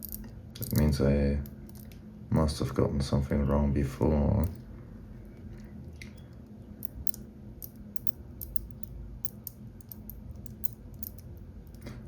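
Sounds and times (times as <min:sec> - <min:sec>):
padlock dials clicking: 0:06.2 - 0:11.8.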